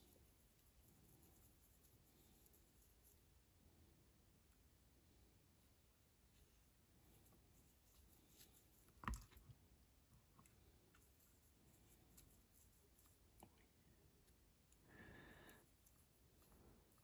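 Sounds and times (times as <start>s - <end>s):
faint clicks and scratching: 0.0s - 3.3s, 6.3s - 17.0s.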